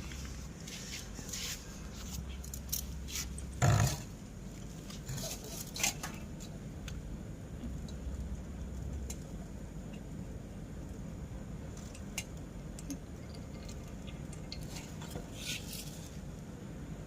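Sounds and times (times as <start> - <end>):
clicks and scrapes of metal parts: 0.6 - 4.1, 4.8 - 6.5, 11.8 - 16.2.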